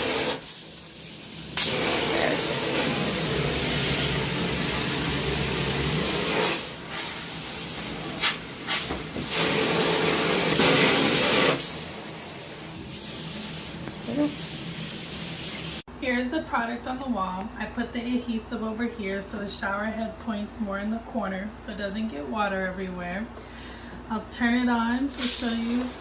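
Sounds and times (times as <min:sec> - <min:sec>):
water spraying from shower head: 0:00.0 - 0:11.9, 0:25.1 - 0:26.0.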